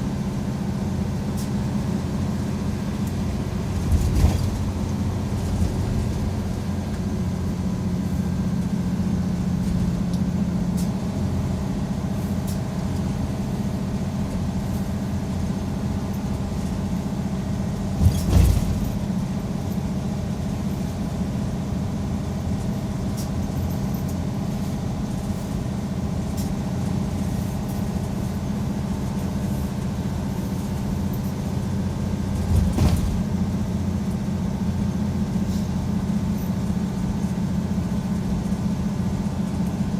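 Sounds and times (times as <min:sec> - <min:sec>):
bus engine hum: 0:00.0 - 0:39.9
road noise: 0:00.0 - 0:39.9
short thump: 0:32.4 - 0:33.2.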